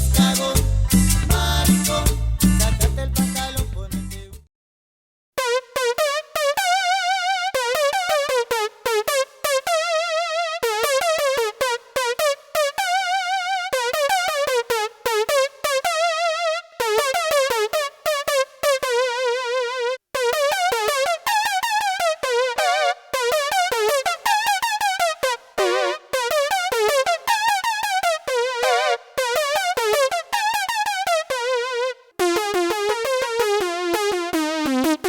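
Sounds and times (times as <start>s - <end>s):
synthesizer lead melody: 5.4s - 35.0s.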